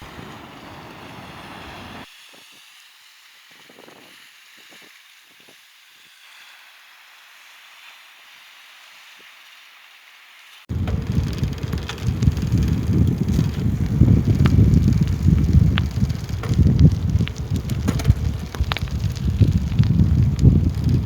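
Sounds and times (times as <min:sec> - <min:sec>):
wind and sea hiss: 0:00.0 - 0:21.0
wind buffeting microphone: 0:10.7 - 0:21.0.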